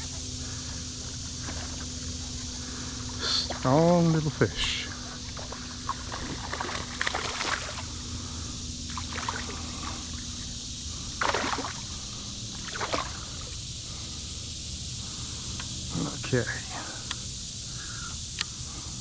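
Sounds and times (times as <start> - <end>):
creek water running: 0.0 - 10.4, 11.1 - 13.6
water splashing and sloshing: 5.0 - 8.0, 8.9 - 10.3, 11.2 - 13.5.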